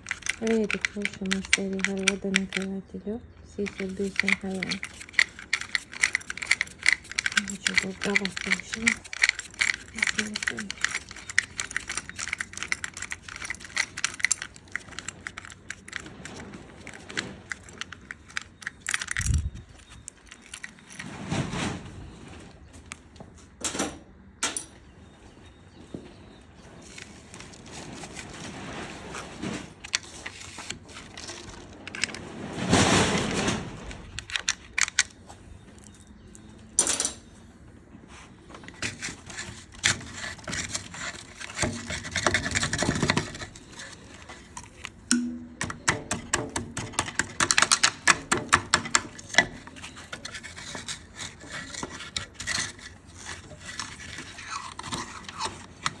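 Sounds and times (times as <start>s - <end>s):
sharp clicks and knocks: 0.0s - 2.9s, 3.6s - 21.0s, 38.6s - 56.0s
tools scraping and rubbing: 0.0s - 2.9s, 3.6s - 21.8s, 26.8s - 36.4s, 38.1s - 56.0s.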